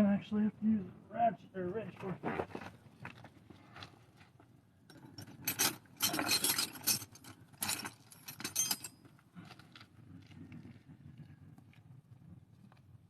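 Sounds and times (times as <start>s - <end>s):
metal hand tools rattling: 4.9s - 9.0s.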